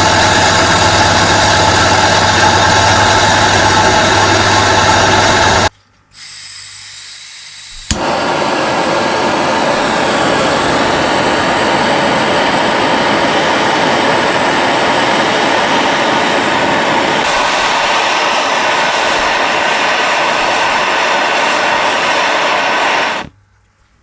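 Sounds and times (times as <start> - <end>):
power tool rushing noise: 0.0 - 5.7.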